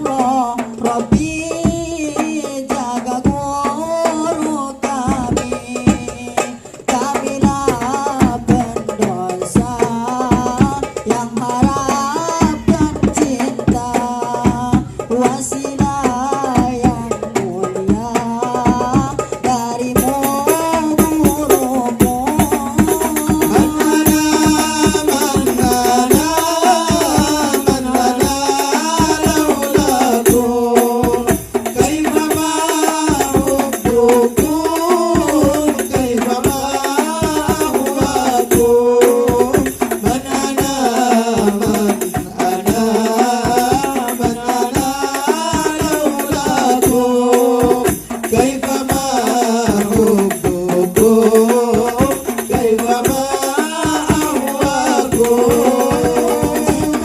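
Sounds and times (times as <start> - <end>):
frame drums and jingles: 0.0 - 57.0.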